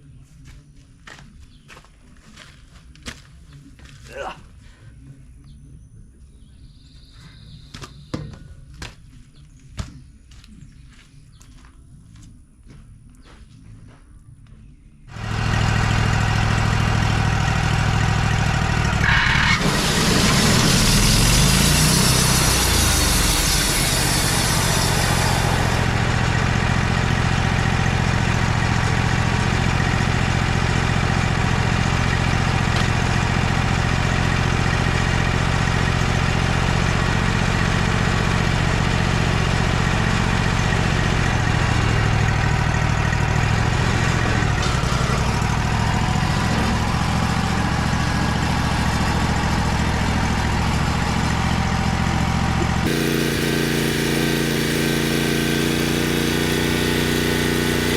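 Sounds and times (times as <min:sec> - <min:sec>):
sawmill gas engine running: 0:15.1 - 0:57.9.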